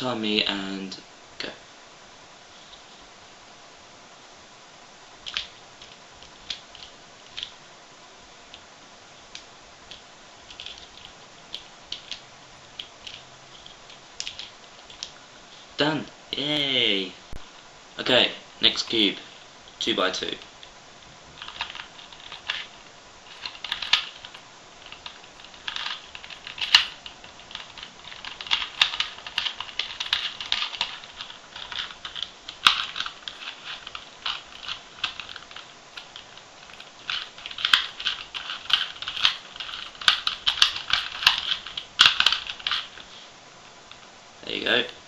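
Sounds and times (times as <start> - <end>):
puzzle cube layers clicking: 5.2 - 7.6, 8.5 - 12.2, 12.8 - 15.2, 21.4 - 43.0.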